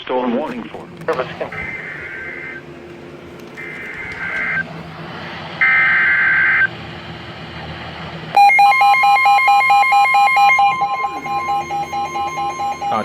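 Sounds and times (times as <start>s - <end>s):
radio hiss: 0.0s - 2.7s, 3.6s - 6.7s
steady high warning tone: 0.0s - 13.0s
raspy two-tone data burst: 1.4s - 2.6s
fast-pulsing electronic beep: 1.5s - 2.6s, 5.6s - 6.7s, 8.4s - 13.0s.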